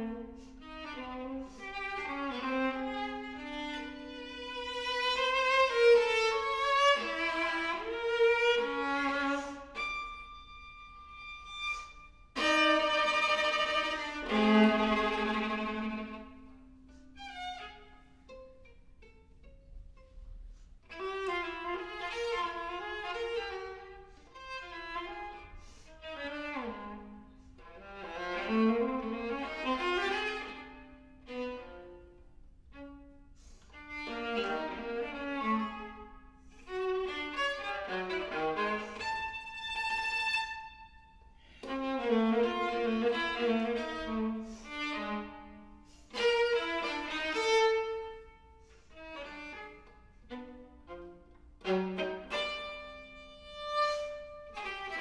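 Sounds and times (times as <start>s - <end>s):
bowed viola melody: 0.0s - 55.0s.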